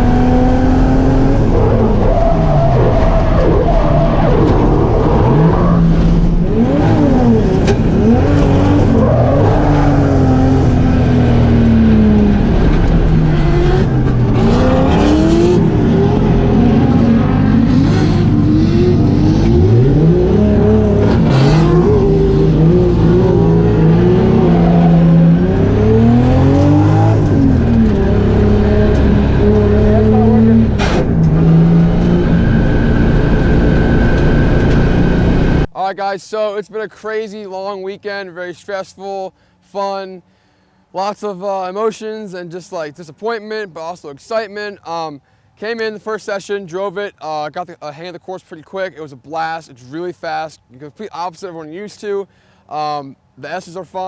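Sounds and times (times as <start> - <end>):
car engine revving hard: 0.0 - 35.7.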